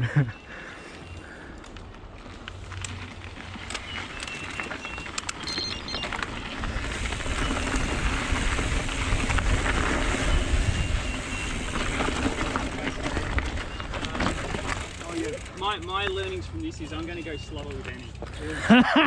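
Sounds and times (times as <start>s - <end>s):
bike tyres crunching on dirt: 0.2s - 18.7s
small clicks and rattles: 1.6s - 9.8s, 11.7s - 18.2s
wind rushing over microphone: 6.5s - 13.8s.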